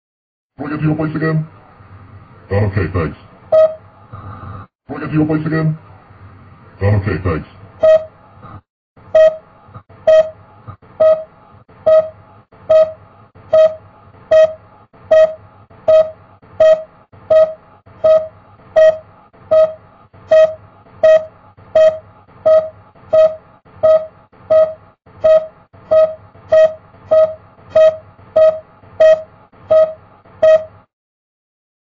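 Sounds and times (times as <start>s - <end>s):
repeating electronic beep: 7.8s - 8.2s, 9.1s - 30.8s.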